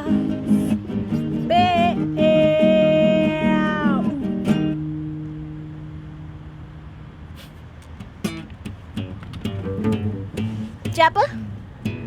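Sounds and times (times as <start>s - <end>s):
person singing: 0.0s - 0.7s, 1.4s - 4.5s
acoustic guitar strum: 0.0s - 12.0s.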